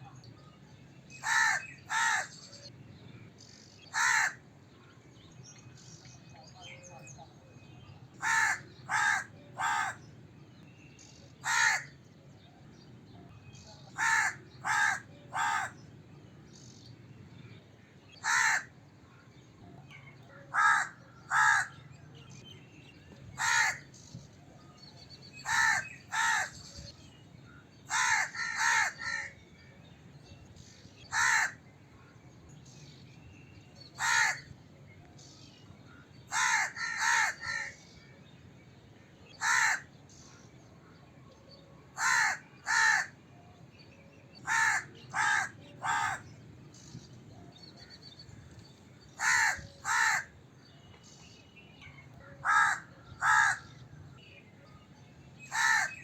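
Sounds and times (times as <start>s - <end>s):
crow cawing: 1.2s - 2.3s, 3.9s - 4.4s, 8.2s - 10.0s, 11.4s - 11.9s, 14.0s - 15.8s, 18.2s - 18.7s, 20.5s - 21.8s, 23.4s - 23.8s, 25.5s - 26.6s, 27.9s - 29.4s, 31.1s - 31.6s, 34.0s - 34.5s, 36.3s - 37.8s, 39.4s - 39.9s, 42.0s - 43.1s, 44.5s - 46.2s, 49.2s - 50.3s, 52.4s - 53.7s, 55.5s - 56.0s.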